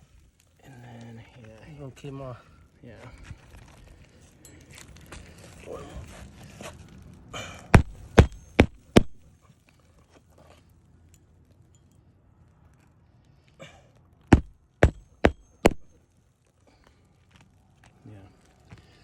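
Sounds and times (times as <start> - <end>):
hammer driving nails: 7.8 - 9.2, 14.3 - 15.9.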